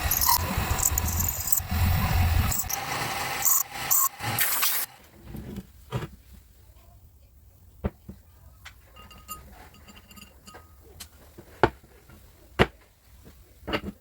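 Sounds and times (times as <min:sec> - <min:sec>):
faint metallic ringing: 0:08.9 - 0:10.9.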